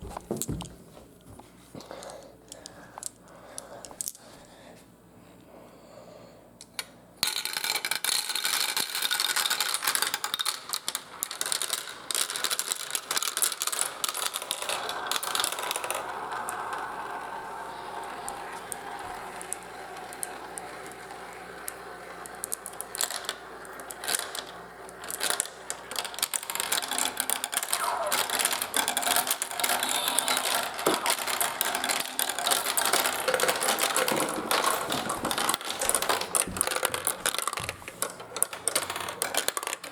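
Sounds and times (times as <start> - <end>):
marbles rolling and clattering: 3.0 - 3.2, 6.7 - 39.9.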